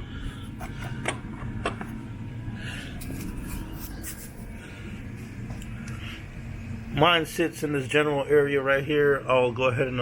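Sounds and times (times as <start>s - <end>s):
low hum: 0.0s - 8.7s
rustling and scraping: 3.0s - 4.5s.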